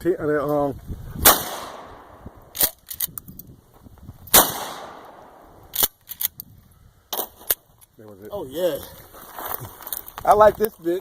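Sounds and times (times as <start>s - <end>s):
shotgun blast with echo: 1.2s - 2.2s, 4.3s - 5.2s
sharp crack: 1.2s - 3.2s, 4.3s - 6.3s.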